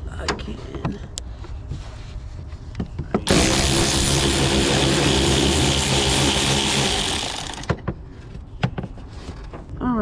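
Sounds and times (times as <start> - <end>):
power drill running: 3.2 - 7.8.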